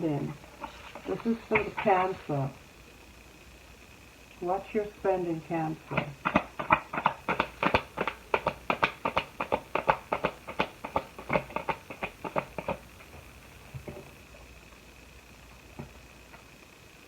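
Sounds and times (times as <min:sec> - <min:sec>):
cards tapping and slapping: 0:00.6 - 0:02.0, 0:05.9 - 0:14.1.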